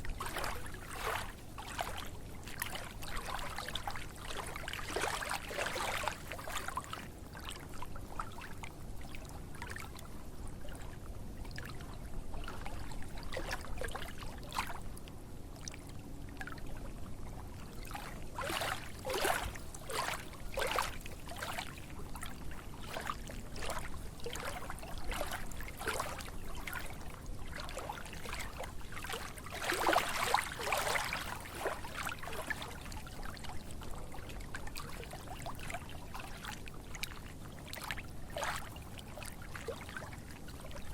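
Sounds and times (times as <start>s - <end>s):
water splashing and trickling: 0.2s - 8.4s, 17.7s - 40.9s.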